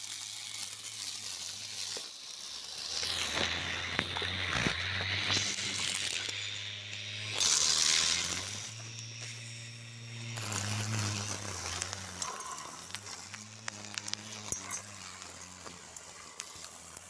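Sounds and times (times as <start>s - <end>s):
lawn mower motor humming: 0.0s - 17.0s
loud hissing rush: 3.2s - 17.0s.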